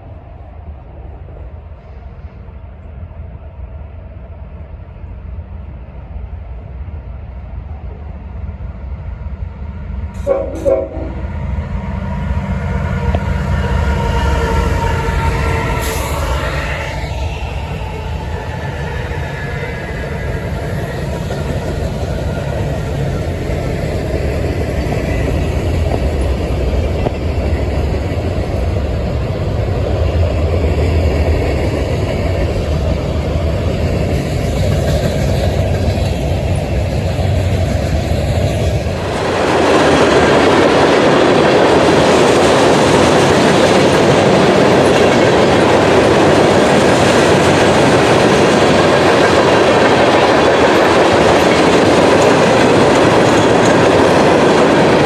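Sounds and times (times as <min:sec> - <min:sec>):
train wheels clattering over rails: 0:12.3 - 0:55.0.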